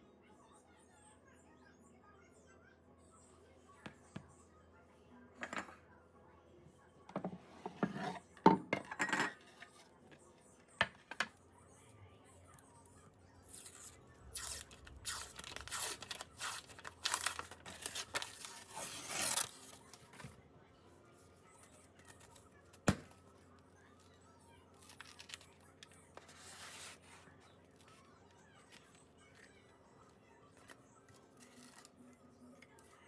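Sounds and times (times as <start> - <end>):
dry rustling and tearing: 13.6 - 20.0.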